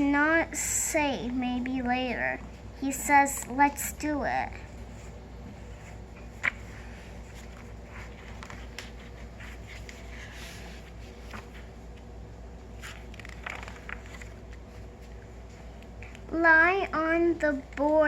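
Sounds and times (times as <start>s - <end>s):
low room hum: 0.0s - 18.0s
faint rustles and taps: 4.7s - 16.4s.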